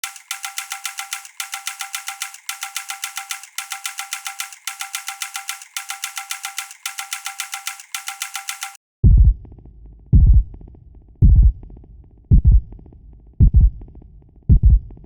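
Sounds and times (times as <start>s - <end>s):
rapid metallic ringing: 0.0s - 8.8s.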